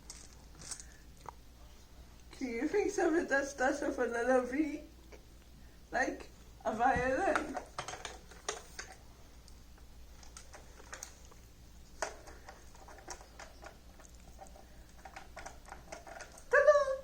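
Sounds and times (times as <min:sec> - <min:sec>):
small objects rummaged through: 0:00.0 - 0:01.0.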